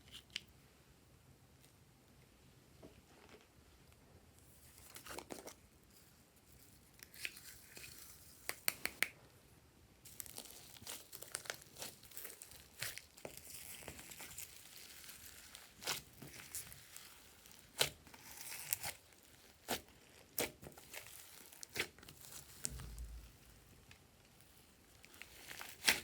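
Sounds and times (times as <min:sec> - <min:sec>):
slime crackling and popping: 0:10.1 - 0:23.6, 0:24.4 - 0:26.0.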